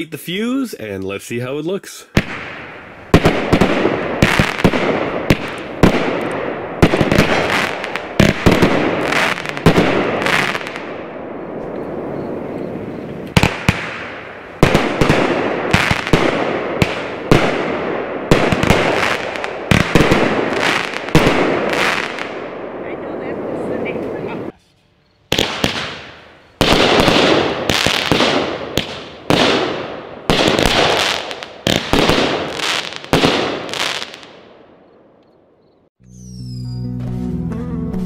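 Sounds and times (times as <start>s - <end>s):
firework bangs with crackle: 2.1s - 11.1s, 13.3s - 22.5s, 25.3s - 34.5s.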